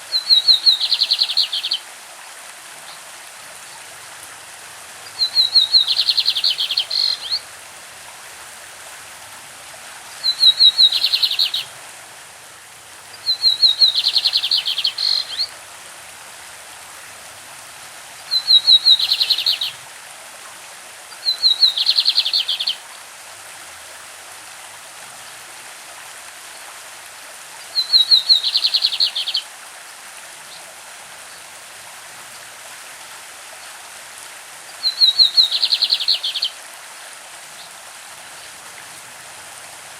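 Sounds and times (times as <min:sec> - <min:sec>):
stream running: 0:00.0 - 0:39.9
bird song with buzzy trill: 0:00.2 - 0:01.8, 0:05.2 - 0:07.4, 0:10.2 - 0:11.7, 0:13.3 - 0:15.5.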